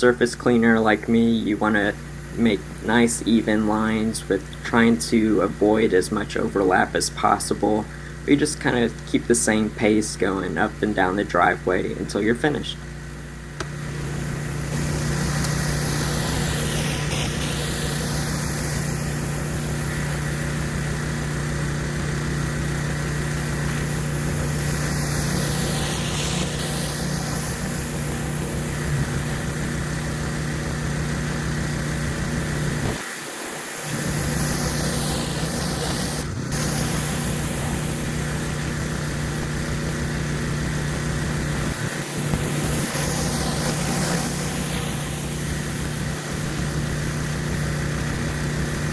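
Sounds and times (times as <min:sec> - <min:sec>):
pressure washer engine running: 0:00.0 - 0:48.9
high-pressure water hissing: 0:13.6 - 0:48.9.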